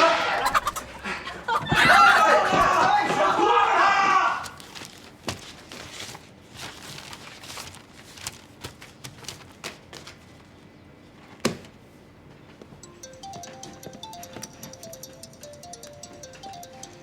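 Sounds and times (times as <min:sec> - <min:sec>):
soft music notes: 0:12.8 - 0:17.0.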